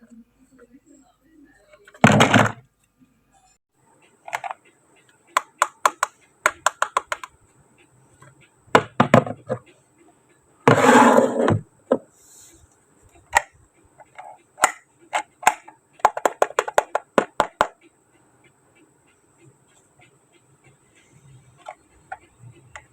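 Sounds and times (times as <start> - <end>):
plastic toy pieces clicking: 5.4 - 7.3.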